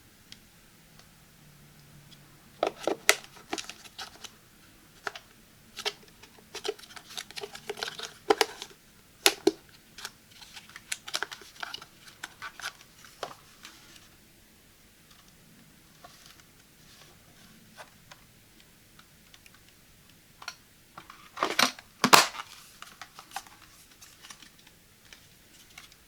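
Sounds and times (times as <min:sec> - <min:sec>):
packaging crinkling: 0:05.8 - 0:13.2, 0:21.3 - 0:26.0.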